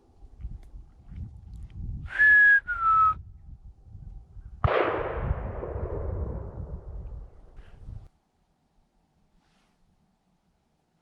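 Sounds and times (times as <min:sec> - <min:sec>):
person whistling: 0:02.1 - 0:03.3
shotgun blast with echo: 0:04.6 - 0:06.7.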